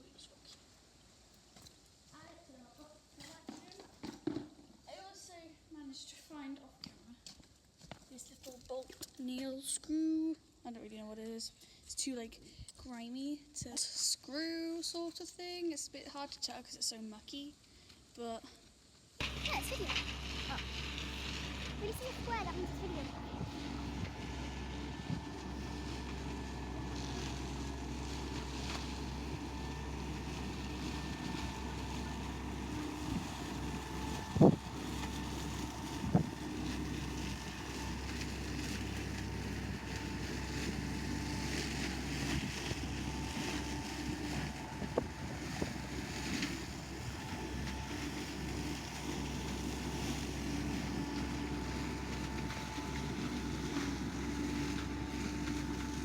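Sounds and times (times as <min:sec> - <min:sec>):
boat engine running: 0:19.2 - 0:56.0.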